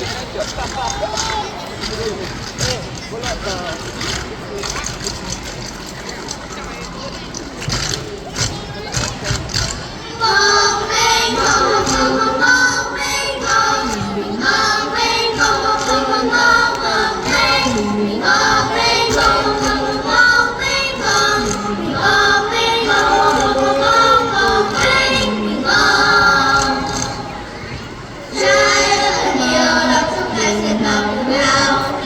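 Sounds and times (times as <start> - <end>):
children's choir singing: 7.6 - 32.0.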